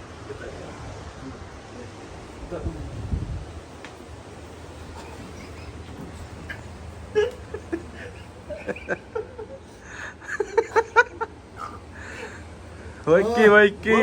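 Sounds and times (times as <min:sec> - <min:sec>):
steady low hum: 0:00.0 - 0:14.0
person laughing: 0:04.9 - 0:12.3.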